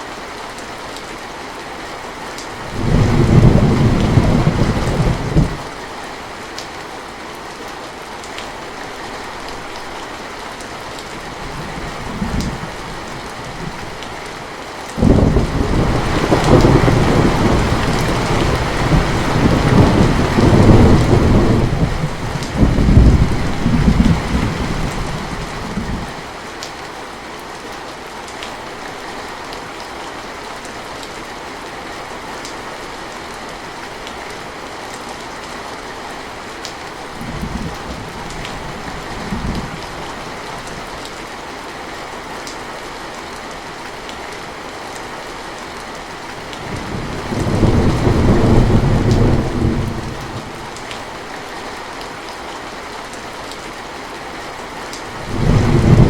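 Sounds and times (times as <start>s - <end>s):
steady rain falling: 0.0s - 56.0s
low rumble of thunder: 2.7s - 5.6s, 15.0s - 26.2s, 46.7s - 50.8s, 55.2s - 56.0s.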